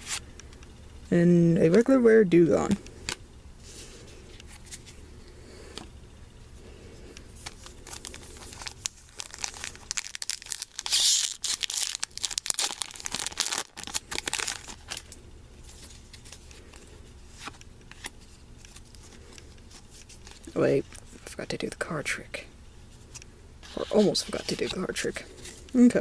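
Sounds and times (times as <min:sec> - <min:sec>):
foil pack tearing and crinkling: 0:07.4 - 0:15.2.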